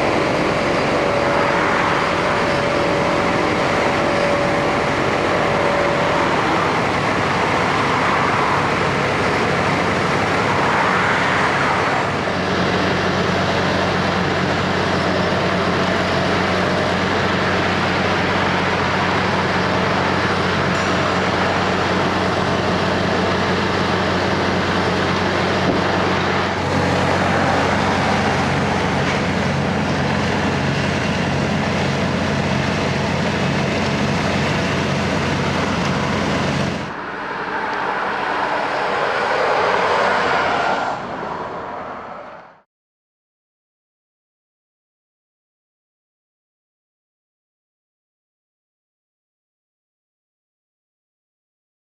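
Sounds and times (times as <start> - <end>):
heavy diesel machinery running: 0.0 - 42.6.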